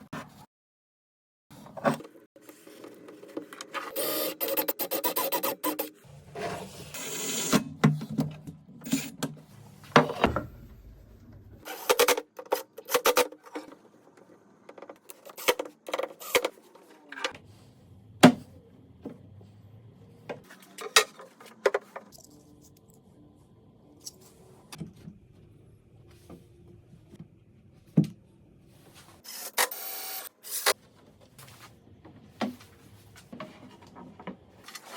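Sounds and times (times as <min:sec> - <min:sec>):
knocks and scrapes of wood and metal: 0:07.8 - 0:13.9, 0:31.3 - 0:34.9
small power tool running: 0:29.3 - 0:30.7.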